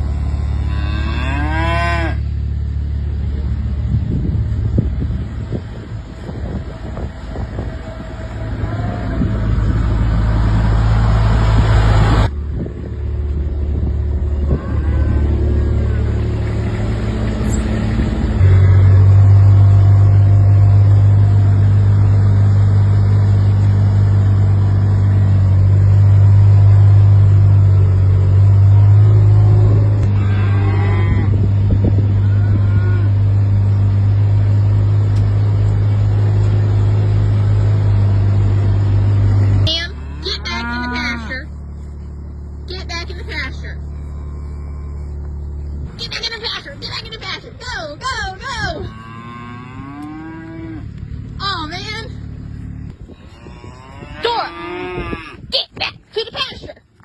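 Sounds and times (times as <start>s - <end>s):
cattle mooing: 0.0s - 2.3s, 14.4s - 20.6s, 28.8s - 38.0s, 39.2s - 47.2s, 48.1s - 51.1s, 52.0s - 55.5s
vehicle engine humming: 0.0s - 57.0s.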